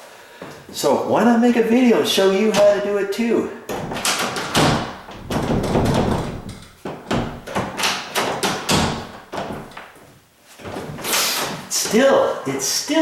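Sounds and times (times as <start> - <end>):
door latch knocking on metal plate: 3.7 - 9.8.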